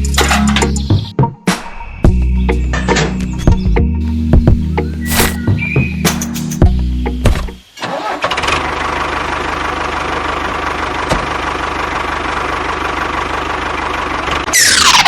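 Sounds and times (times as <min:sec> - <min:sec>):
sharp click: 0:05.1 - 0:05.4, 0:06.1 - 0:06.7
small engine idling: 0:07.8 - 0:14.6.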